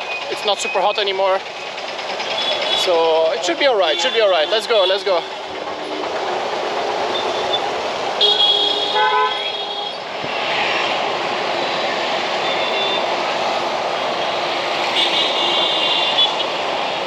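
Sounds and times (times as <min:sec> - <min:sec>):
road traffic passing: 0:00.0 - 0:17.0
vehicle horns honking: 0:03.8 - 0:05.5, 0:08.2 - 0:10.0, 0:14.9 - 0:16.5.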